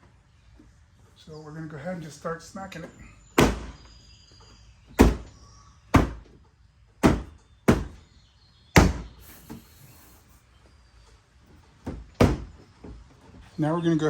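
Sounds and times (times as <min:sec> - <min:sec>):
sharp knocks on door panel: 0:03.4 - 0:03.8, 0:05.0 - 0:05.3, 0:05.9 - 0:06.4, 0:07.0 - 0:08.1, 0:08.8 - 0:09.2, 0:11.8 - 0:13.0.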